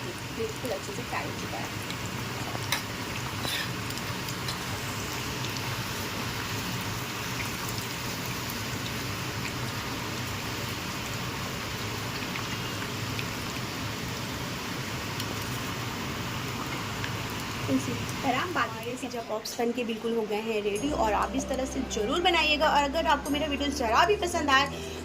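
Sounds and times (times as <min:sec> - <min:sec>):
hot oil sizzling in a pan: 0:00.0 - 0:25.0.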